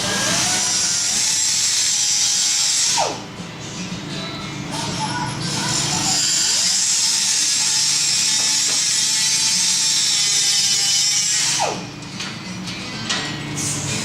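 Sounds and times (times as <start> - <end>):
power tool running: 0.0 - 3.3, 4.7 - 12.0.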